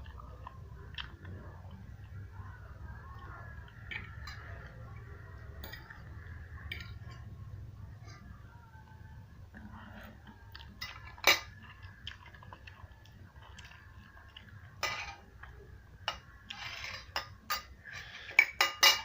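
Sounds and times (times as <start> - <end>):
person chewing food: 0.0 - 4.8, 9.5 - 15.7
cutlery clinking on plate: 10.8 - 11.6, 14.8 - 15.2, 16.1 - 19.0.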